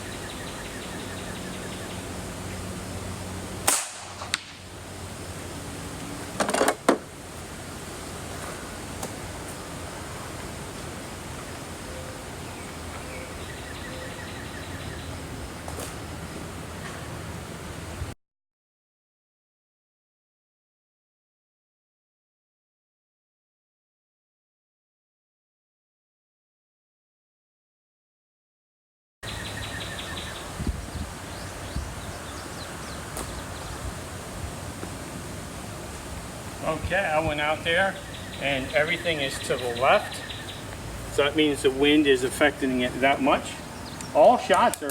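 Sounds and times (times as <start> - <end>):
background hiss: 29.3 - 44.9.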